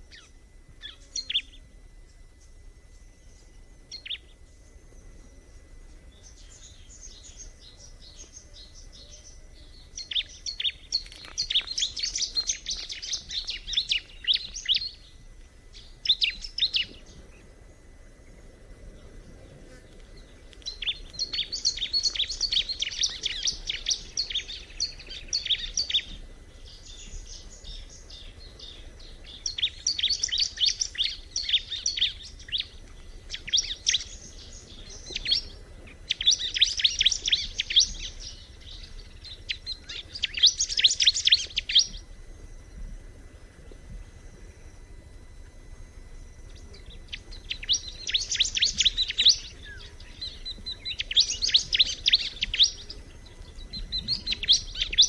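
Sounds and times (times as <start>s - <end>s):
bird chirping song: 0.0s - 55.0s.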